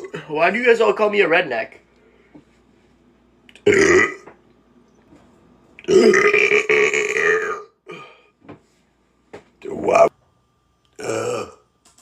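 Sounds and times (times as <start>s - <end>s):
person burping: 3.6s - 4.3s, 5.8s - 8.2s, 10.9s - 11.6s.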